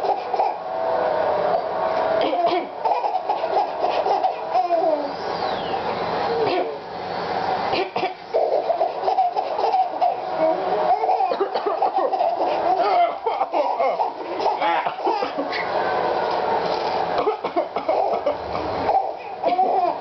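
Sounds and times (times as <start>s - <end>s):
baby laughing: 0.0s - 0.6s, 2.2s - 5.2s, 7.8s - 15.7s, 17.2s - 20.0s.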